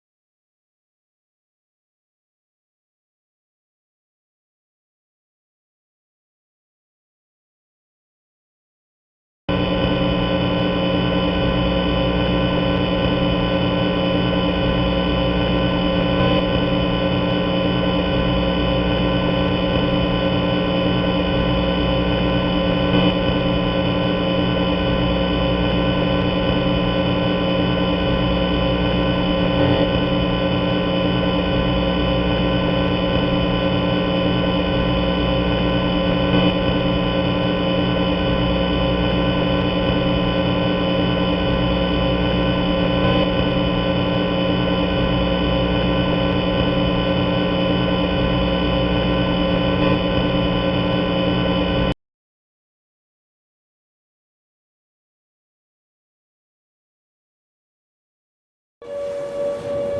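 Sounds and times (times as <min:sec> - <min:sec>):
ambient drone of held tones: 0:09.5 - 0:51.9, 0:58.8 - 0:59.9.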